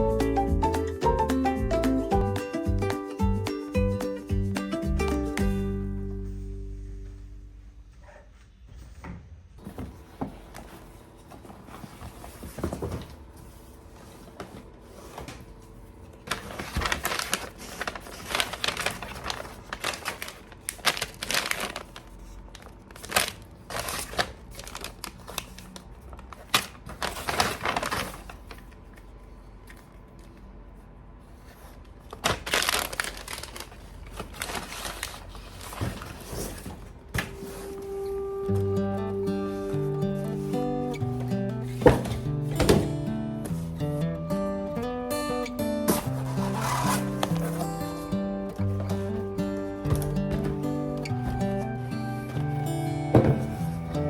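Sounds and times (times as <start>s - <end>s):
packaging crinkling and tearing: 16.2s - 29.0s, 32.1s - 36.4s, 46.0s - 47.8s.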